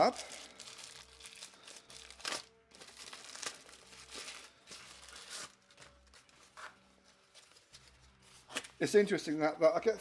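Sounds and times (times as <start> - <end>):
plastic bag crinkling: 0.0 - 6.1.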